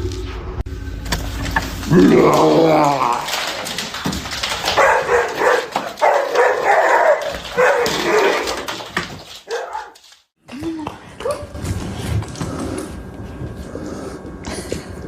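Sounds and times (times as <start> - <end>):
dog barking: 4.8 - 8.5, 9.5 - 10.0.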